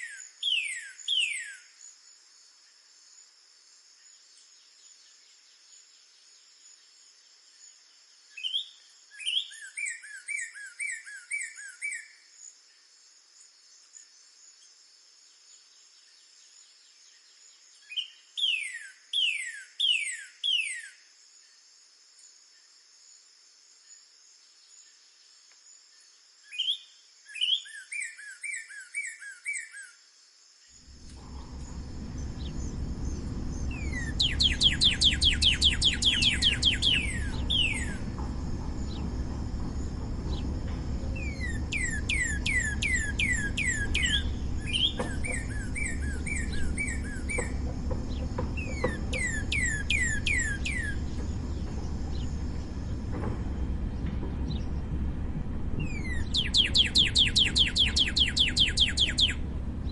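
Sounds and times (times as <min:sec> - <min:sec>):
bird whistling song: 0:00.0 - 0:01.8, 0:08.3 - 0:12.2, 0:17.8 - 0:21.0, 0:26.4 - 0:30.0, 0:31.2 - 0:53.3, 0:55.8 - 0:59.9
steady high hum: 0:30.8 - 0:59.9
steady low rumble: 0:30.8 - 0:59.9.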